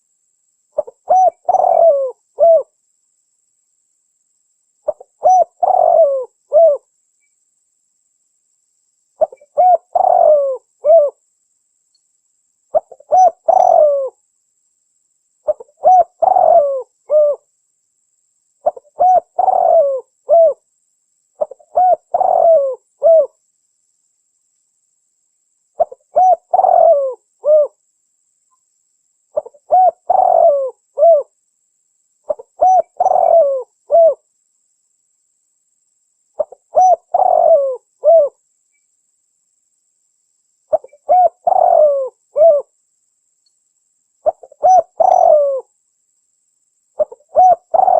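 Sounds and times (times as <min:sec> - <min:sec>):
dove cooing: 0:00.8 - 0:02.8, 0:04.9 - 0:06.9, 0:09.2 - 0:11.2, 0:12.7 - 0:14.2, 0:15.4 - 0:17.5, 0:18.6 - 0:20.6, 0:21.4 - 0:23.4, 0:25.8 - 0:27.8, 0:29.4 - 0:31.3, 0:32.3 - 0:34.2, 0:36.4 - 0:38.4, 0:40.7 - 0:42.7, 0:44.2 - 0:45.7, 0:47.0 - 0:47.9.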